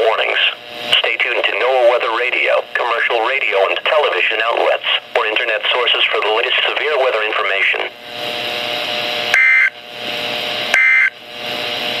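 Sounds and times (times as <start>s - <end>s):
radio hiss: 0.0s - 8.0s.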